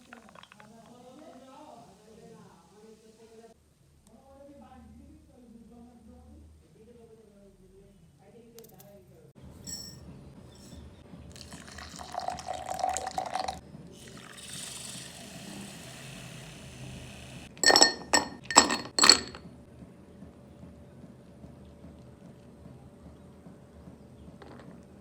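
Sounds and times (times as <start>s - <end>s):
liquid pouring into a cup: 0.0s - 1.6s, 11.3s - 16.6s
spoon clinking against a cup: 9.7s - 10.0s, 11.4s - 13.6s, 17.6s - 19.4s.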